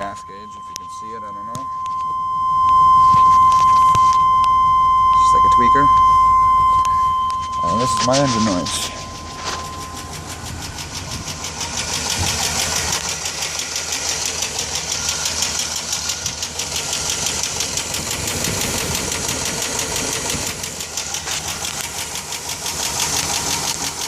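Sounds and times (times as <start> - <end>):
car engine running: 0.0 - 24.0
rapid engine ticking: 6.7 - 24.0.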